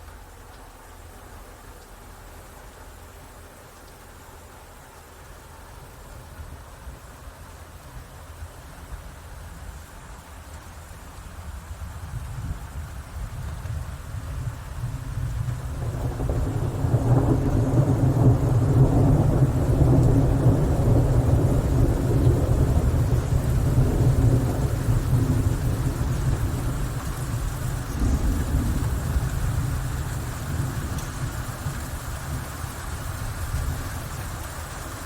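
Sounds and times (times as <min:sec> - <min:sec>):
steady rain: 0:00.0 - 0:35.0
thunder rumbling: 0:12.2 - 0:35.0.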